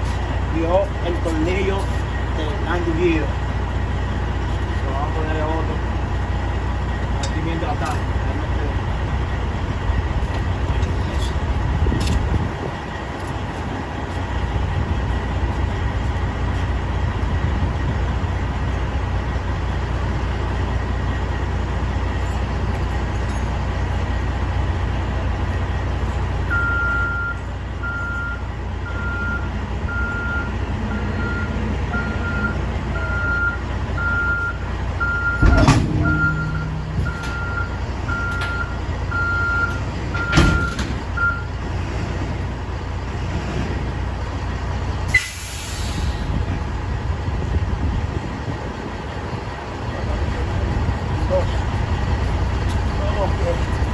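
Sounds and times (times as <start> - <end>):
diesel truck engine idling: 0.0 - 53.9
reversing alarm beeping: 26.5 - 41.6.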